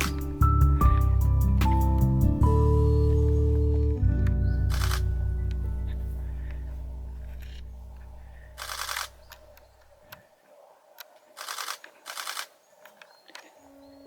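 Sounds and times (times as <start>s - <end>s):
background music: 0.0s - 8.4s
camera shutter burst clicks: 4.7s - 5.1s, 8.6s - 9.6s, 11.4s - 12.6s.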